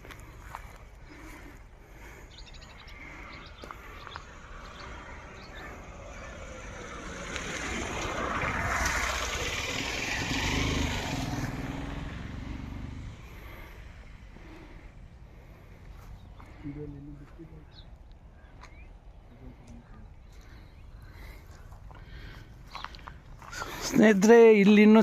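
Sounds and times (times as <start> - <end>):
motor vehicle passing: 0.0 - 24.1
bird chirps: 1.5 - 8.1, 15.9 - 21.7.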